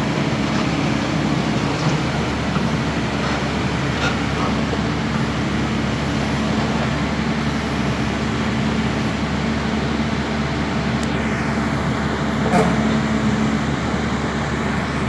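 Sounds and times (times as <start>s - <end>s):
diesel excavator engine running: 0.0s - 15.0s.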